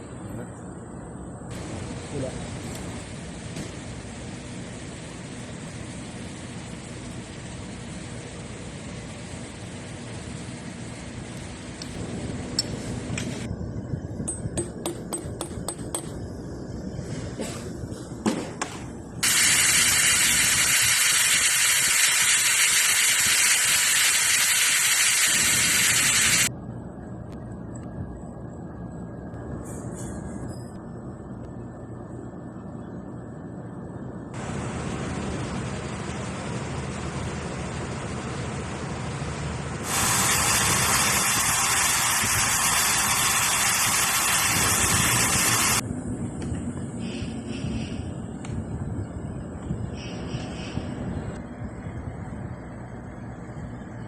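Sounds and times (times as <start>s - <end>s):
pressurised air hissing out: 19.2s - 26.5s, 39.8s - 45.8s.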